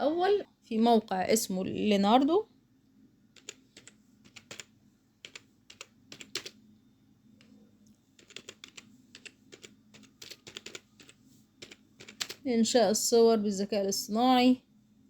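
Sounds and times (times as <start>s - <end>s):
keyboard typing: 3.4s - 6.6s, 8.2s - 12.5s.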